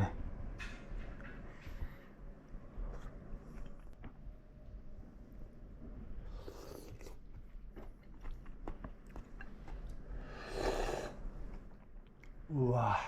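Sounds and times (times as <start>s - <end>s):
noisy sip of soup: 6.2s - 7.2s.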